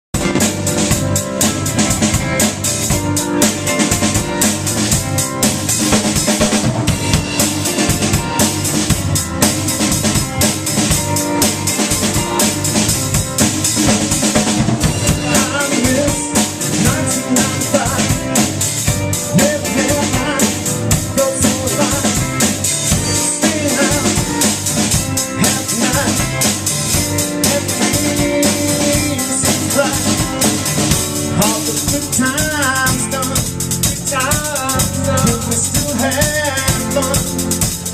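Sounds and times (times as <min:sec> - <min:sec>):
drum kit beat: 0:00.1 - 0:37.9
live band playing: 0:00.1 - 0:37.9.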